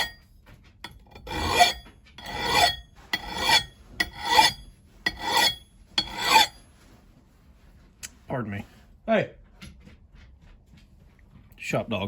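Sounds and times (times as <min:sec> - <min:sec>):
hand file rasping on steel: 0:00.0 - 0:00.2, 0:00.9 - 0:06.7.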